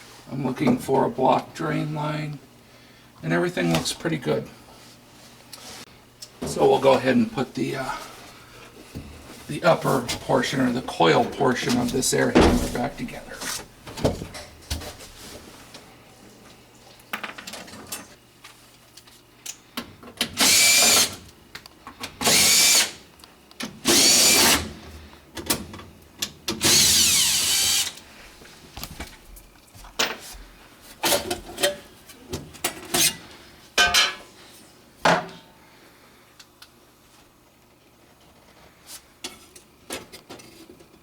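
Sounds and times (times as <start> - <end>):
cordless drill driving screws: 20.4 - 21.2, 22.2 - 23.0, 23.8 - 24.7, 26.6 - 28.0.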